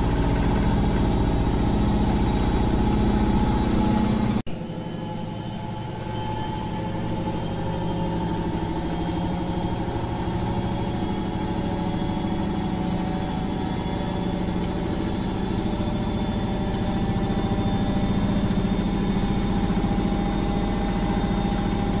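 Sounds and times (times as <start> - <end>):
washing machine motor hum: 0.0 - 4.4
faint high whining tones: 0.0 - 22.0.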